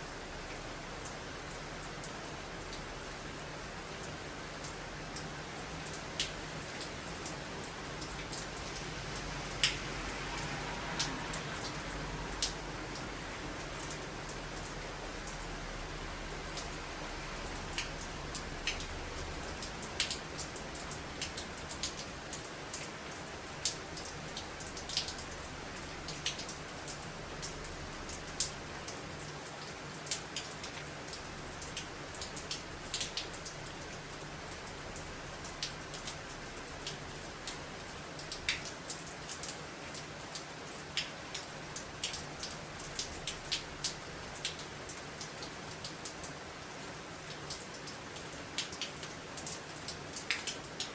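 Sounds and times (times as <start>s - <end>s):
raindrops ticking: 0.1s - 50.9s.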